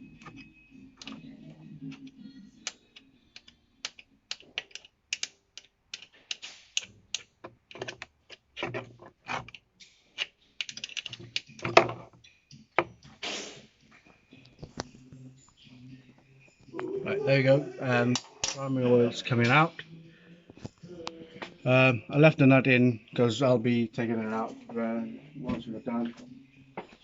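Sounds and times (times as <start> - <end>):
hand tools clicking on metal: 3.4 - 9.6, 10.2 - 12.0.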